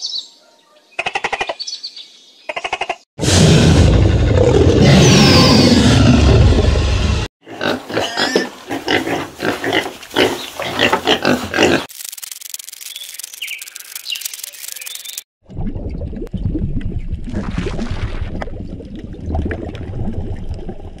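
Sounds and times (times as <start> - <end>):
high chirps: 11.9 - 15.3.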